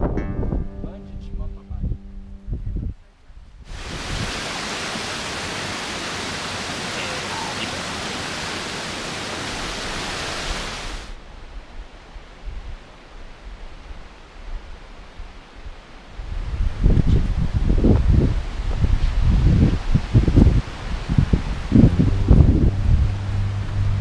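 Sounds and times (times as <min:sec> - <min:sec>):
faint low rumble: 0:00.0 - 0:03.6, 0:21.4 - 0:24.0
waterfall roaring: 0:03.7 - 0:11.2.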